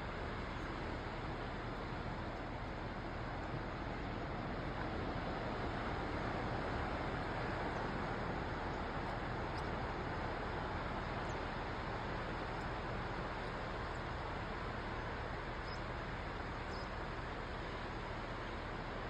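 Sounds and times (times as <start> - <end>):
ocean waves surf: 0.0 - 19.0.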